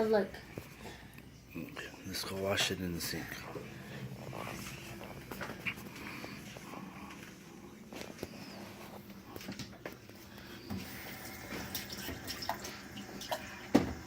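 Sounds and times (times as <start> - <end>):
water running from a tap: 10.7 - 14.0.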